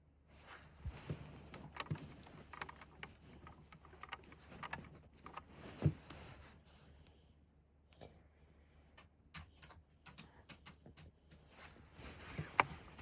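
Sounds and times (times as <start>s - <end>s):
soft rustling of doll handling: 0.3s - 7.2s, 11.5s - 13.0s.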